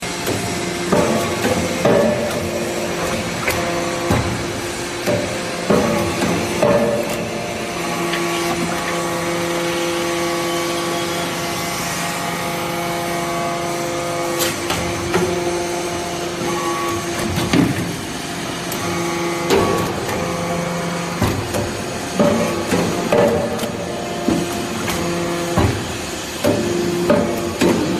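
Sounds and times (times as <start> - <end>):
hydraulic pump humming: 0.0 - 27.9.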